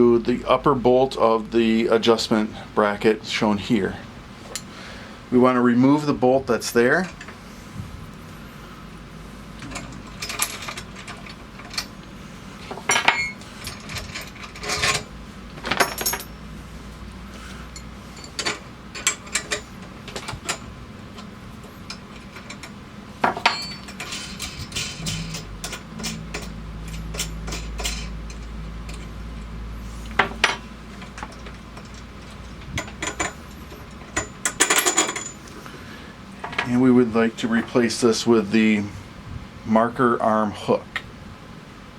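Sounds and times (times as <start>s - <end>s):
wrenches clinking on metal: 9.6s - 16.4s, 17.6s - 29.5s, 30.1s - 35.5s
low hum: 23.4s - 34.3s.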